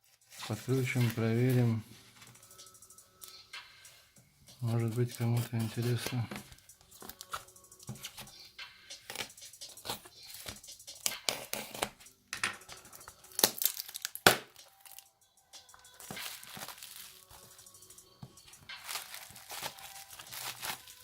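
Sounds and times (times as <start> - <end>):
packaging crinkling and tearing: 13.0 - 15.0, 16.0 - 17.6, 18.7 - 21.0.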